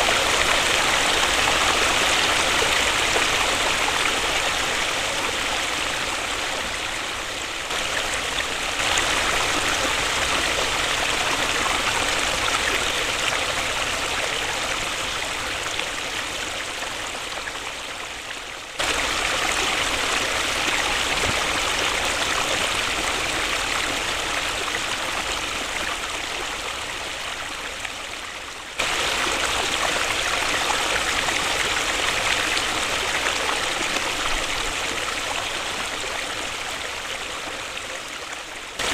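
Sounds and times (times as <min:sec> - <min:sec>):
waterfall rushing: 0:00.0 - 0:15.6, 0:18.8 - 0:25.8.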